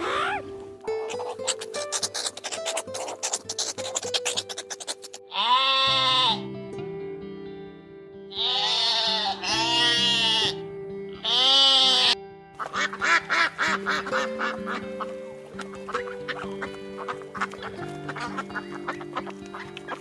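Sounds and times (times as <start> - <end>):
short quacking calls: 0.0 - 6.4, 8.3 - 10.6, 11.2 - 20.0
goat bleating: 0.0 - 6.5, 8.3 - 12.2
background music: 0.0 - 20.0.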